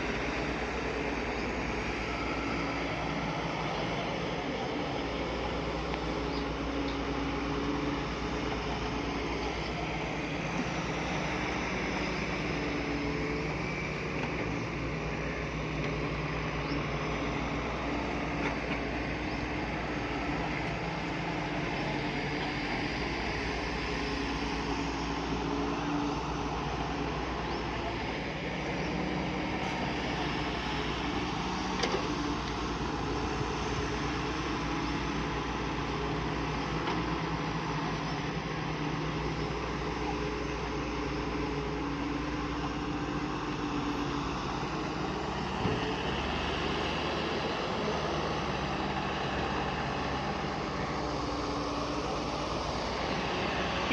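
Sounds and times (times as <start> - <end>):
heavy machinery diesel engine: 0.0 - 53.9.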